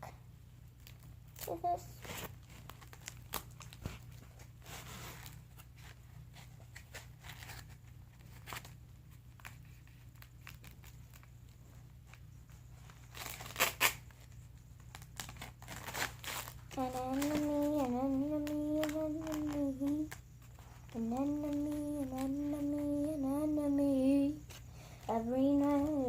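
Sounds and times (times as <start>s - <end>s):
tape crinkling: 0.6s - 26.0s
adhesive tape ripping: 13.1s - 14.3s, 14.9s - 17.4s.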